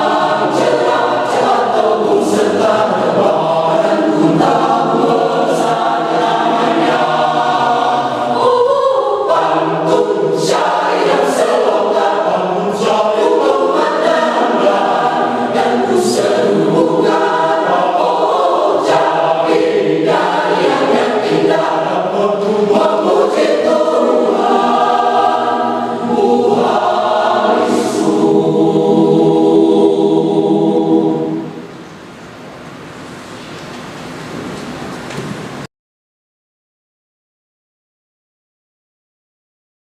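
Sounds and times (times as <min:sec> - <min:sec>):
church choir singing: 0:00.0 - 0:31.8.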